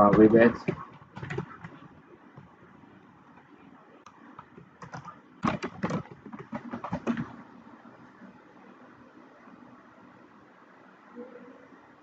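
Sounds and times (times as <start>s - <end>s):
computer keyboard typing: 0.0s - 2.6s, 4.1s - 7.4s.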